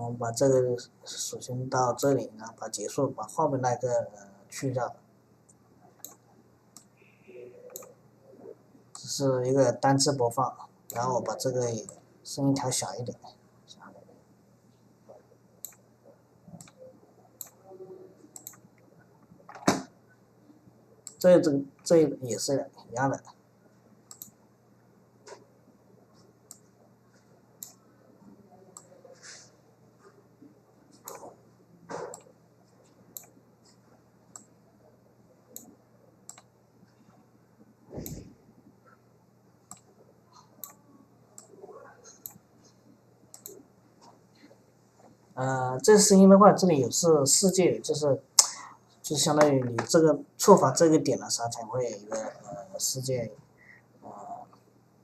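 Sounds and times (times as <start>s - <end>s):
computer mouse clicking: 5.5s - 6.2s, 7.7s - 8.0s, 15.6s - 15.8s, 16.5s - 16.8s, 17.4s - 17.6s, 18.3s - 18.9s, 21.0s - 21.9s, 24.1s - 24.4s, 26.5s - 26.7s, 27.6s - 27.8s, 30.9s - 32.4s, 33.1s - 34.5s, 36.3s - 36.5s, 38.0s - 38.3s, 39.6s - 40.8s, 41.4s - 42.4s, 43.3s - 44.5s.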